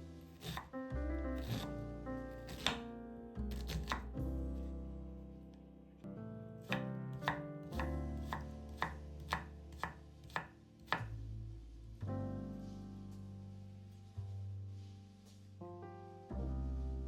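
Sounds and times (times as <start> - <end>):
instrumental music with chords: 0.0 - 9.7.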